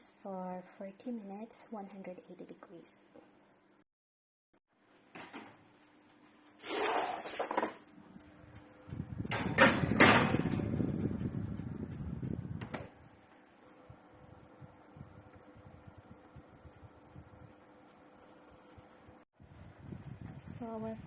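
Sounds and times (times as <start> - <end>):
oven rack scraping: 6.6 - 7.8, 9.2 - 11.4
oven rack clunking and rattling: 9.2 - 11.7
oven door click shut: 9.3 - 10.7.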